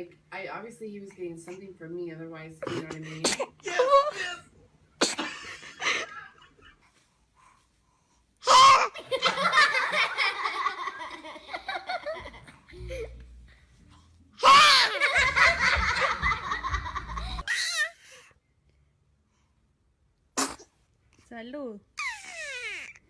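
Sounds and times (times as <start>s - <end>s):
baby sneezing: 2.6s - 3.6s, 5.0s - 5.4s, 8.4s - 9.0s, 14.4s - 14.9s, 20.4s - 20.8s
laughter: 5.3s - 6.8s, 9.0s - 13.2s, 14.7s - 17.5s.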